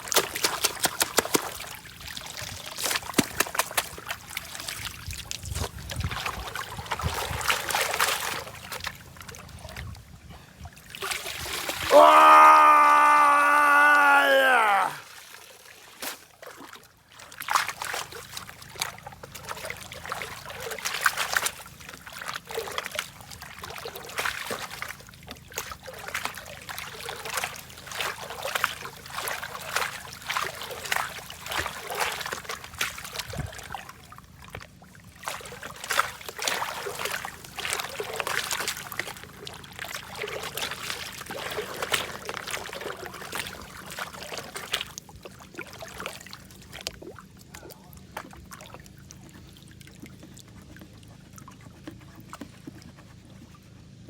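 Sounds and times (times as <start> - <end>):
water splashing in a pan: 0.0 - 9.3.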